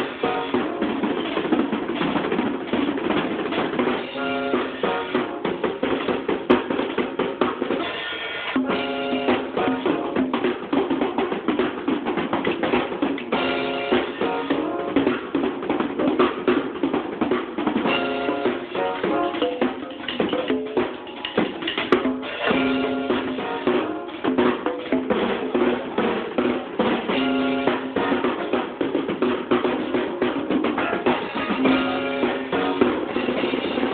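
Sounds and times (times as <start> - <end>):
drum kit played fast: 0.0 - 33.9
recorded gospel song: 29.6 - 33.9.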